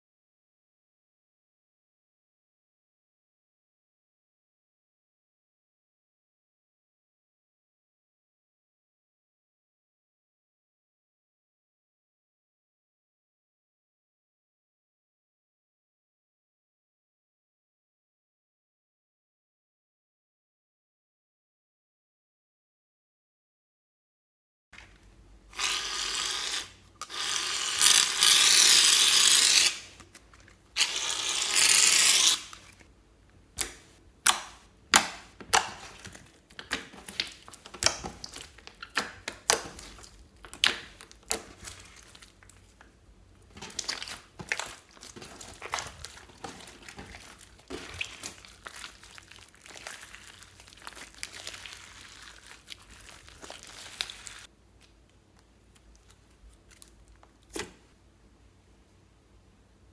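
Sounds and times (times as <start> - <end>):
plastic packaging crinkling and tearing: 25.5 - 32.9, 43.6 - 54.5.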